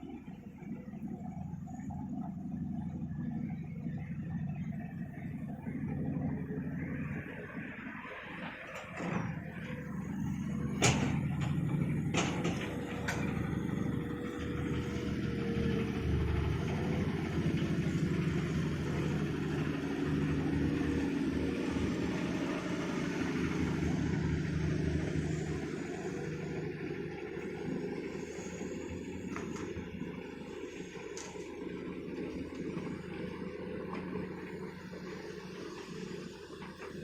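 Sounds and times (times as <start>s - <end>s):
excavator engine running: 0.0s - 37.0s.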